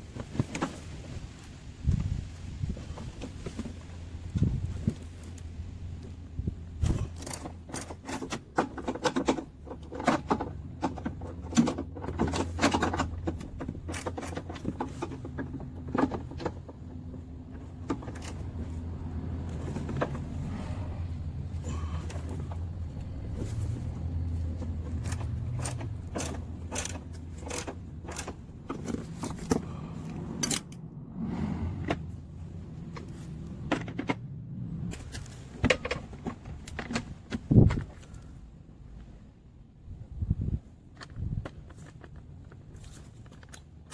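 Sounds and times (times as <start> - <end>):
metal tools clinking and knocking: 24.6 - 29.7.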